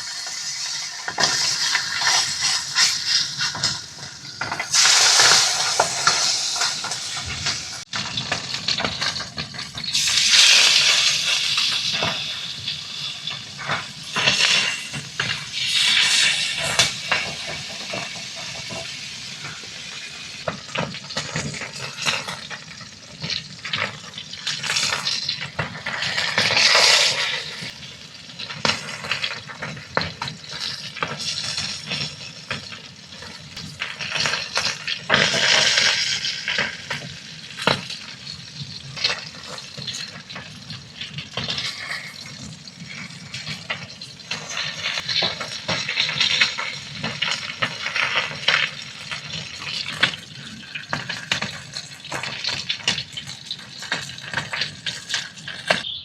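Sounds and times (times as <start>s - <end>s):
steak sizzling and crackling: 0.0s - 55.9s.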